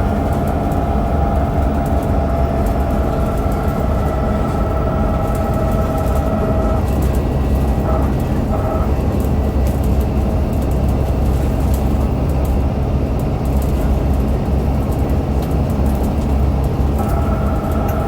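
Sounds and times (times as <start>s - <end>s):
axle whine: 0.0s - 8.9s, 17.0s - 18.0s
bus engine droning: 0.0s - 18.0s.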